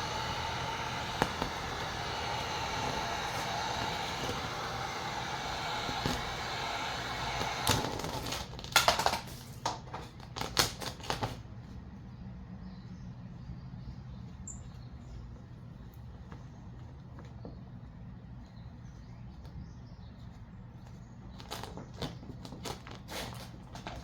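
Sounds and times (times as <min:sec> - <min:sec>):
vinyl film hissing: 0:00.0 - 0:08.6.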